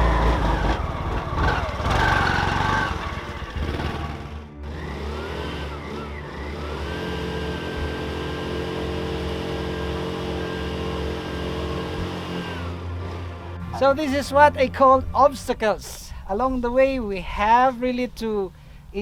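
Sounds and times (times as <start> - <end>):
motorcycle engine revving: 0.0 - 14.6.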